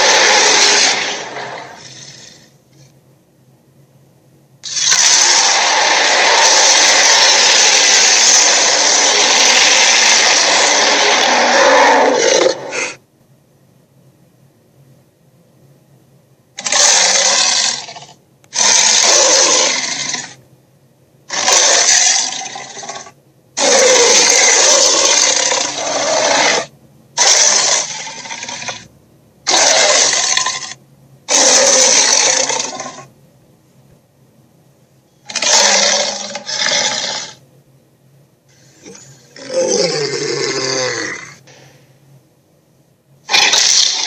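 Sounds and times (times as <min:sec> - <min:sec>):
dragon roars: 0:00.0 - 0:02.5, 0:04.7 - 0:13.0, 0:16.6 - 0:20.4, 0:23.6 - 0:28.8, 0:31.3 - 0:33.1, 0:35.3 - 0:37.4, 0:38.8 - 0:41.5, 0:43.3 - 0:44.0.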